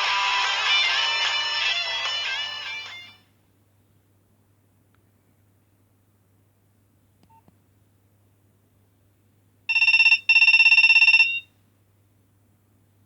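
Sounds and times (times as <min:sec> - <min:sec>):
phone ringtone trill: 0:09.7 - 0:11.4.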